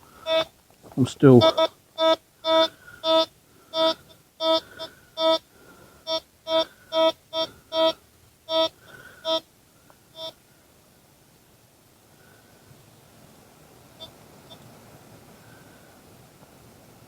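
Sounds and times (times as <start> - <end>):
metal detector beeps: 0.2 - 0.5, 1.4 - 5.4, 6.1 - 9.4.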